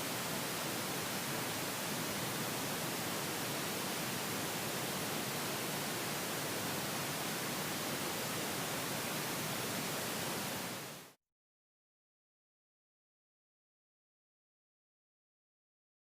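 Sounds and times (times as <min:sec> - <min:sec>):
noise test signal hiss: 0:00.0 - 0:11.2.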